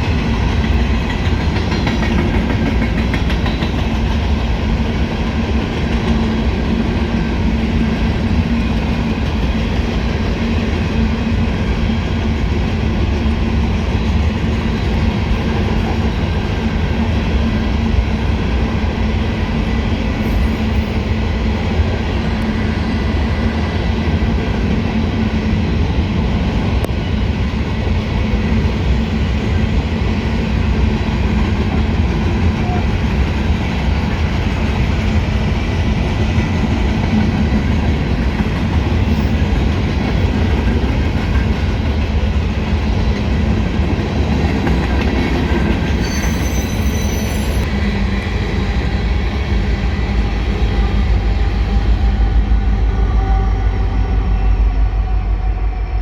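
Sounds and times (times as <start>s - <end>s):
clickety-clack over rail joints: 0.0s - 22.8s, 27.7s - 48.3s
train wheels rumbling on rails: 0.0s - 56.0s.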